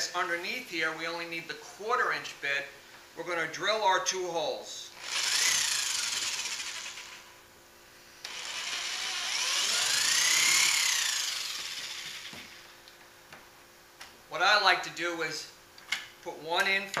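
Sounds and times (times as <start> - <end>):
power drill whining: 5.0 - 7.4, 8.2 - 12.7.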